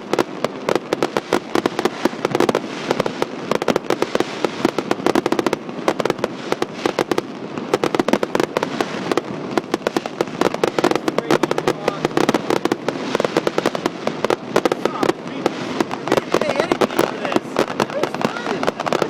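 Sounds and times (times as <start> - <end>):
fireworks banging and crackling: 0.0 - 19.0.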